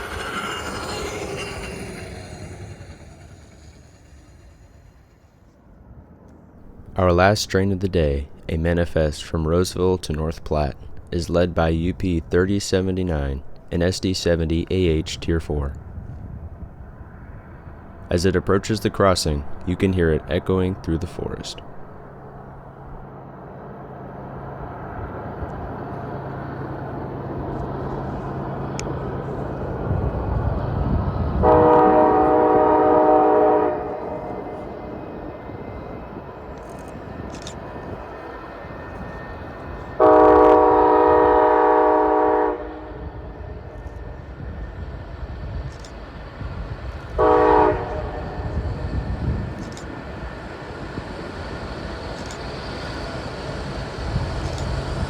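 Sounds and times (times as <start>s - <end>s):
diesel locomotive engine rumble: 0.0s - 55.0s
locomotive horn blasts: 31.4s - 34.7s, 40.0s - 43.1s, 47.2s - 48.6s.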